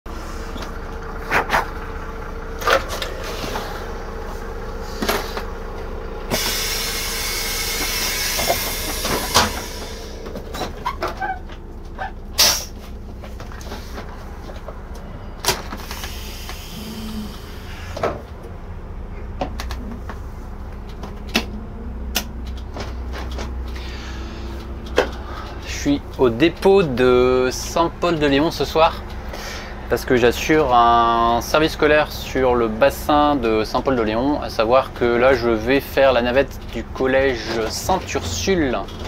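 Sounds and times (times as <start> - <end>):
diesel engine idling: 0.1 - 39.0
air hiss: 6.3 - 10.3, 12.4 - 12.8, 15.8 - 17.9.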